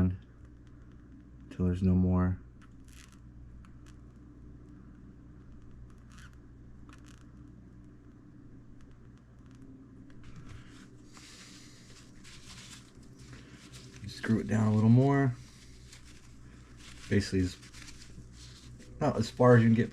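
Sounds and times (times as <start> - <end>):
steady low hum: 0.0 - 19.9
rustling: 8.9 - 19.9.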